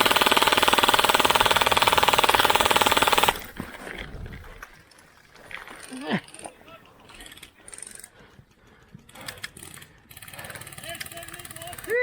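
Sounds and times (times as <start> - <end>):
airsoft gun full-auto rattle: 0.0 - 3.6, 9.0 - 12.0.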